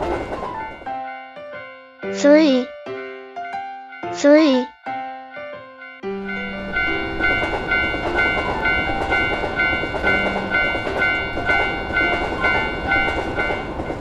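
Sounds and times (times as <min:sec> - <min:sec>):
train rumbling and clattering: 0:00.0 - 0:01.7, 0:05.6 - 0:14.0
railroad crossing warning bell: 0:00.0 - 0:02.8, 0:03.4 - 0:14.0.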